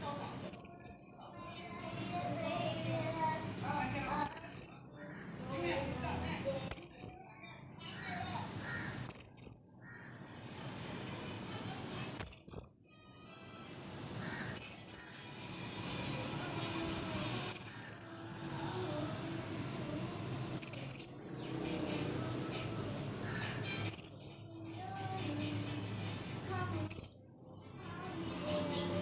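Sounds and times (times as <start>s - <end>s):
parrot double chirps: 0.5s - 1.1s, 4.2s - 4.8s, 6.7s - 7.3s, 9.0s - 9.7s, 12.2s - 12.8s, 14.6s - 15.2s, 17.5s - 18.1s, 20.6s - 21.2s, 23.9s - 24.5s, 26.8s - 27.2s.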